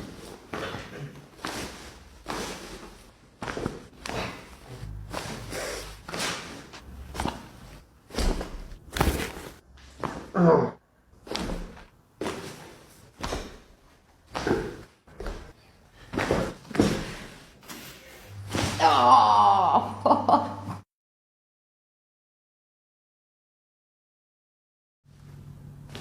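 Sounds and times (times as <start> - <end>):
person making brief vocal sound: 10.2 - 10.8, 18.6 - 20.1.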